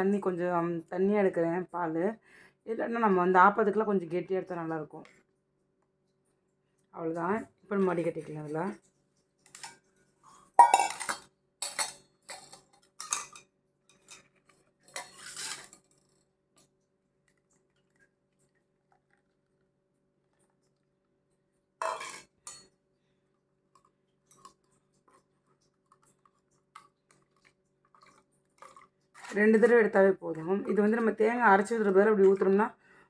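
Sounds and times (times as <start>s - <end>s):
kitchen utensils clattering: 10.4s - 14.2s, 14.9s - 15.8s, 21.8s - 22.6s.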